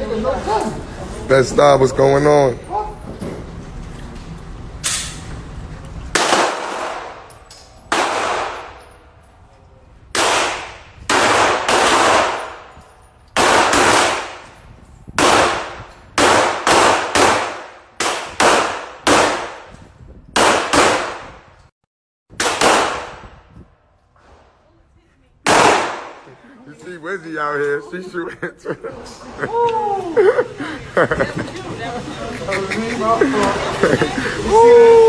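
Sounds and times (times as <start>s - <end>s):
gunshots with echo: 7.9s - 8.8s, 10.2s - 12.7s, 13.4s - 14.4s, 15.2s - 19.7s, 20.4s - 21.4s, 25.4s - 26.2s.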